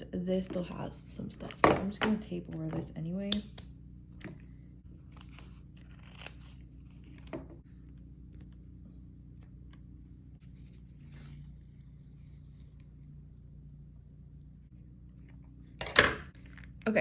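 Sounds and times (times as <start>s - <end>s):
steady low hum: 0.0s - 17.0s
tape crinkling: 5.0s - 7.5s
tape tearing: 5.1s - 7.4s.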